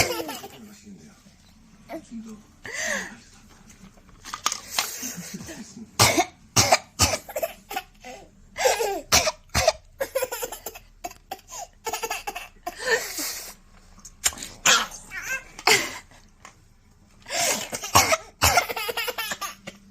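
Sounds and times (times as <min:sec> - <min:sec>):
woman coughing: 0:06.0 - 0:07.8, 0:08.6 - 0:10.2, 0:15.6 - 0:16.0, 0:17.4 - 0:19.5.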